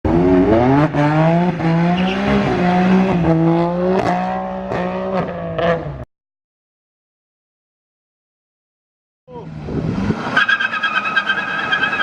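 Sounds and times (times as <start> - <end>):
sports car engine revving: 0.1 - 6.0.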